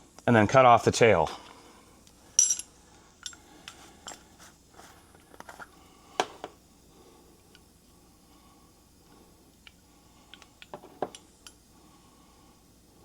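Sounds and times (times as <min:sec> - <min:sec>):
metal tools clicking and clinking: 0:02.4 - 0:04.2.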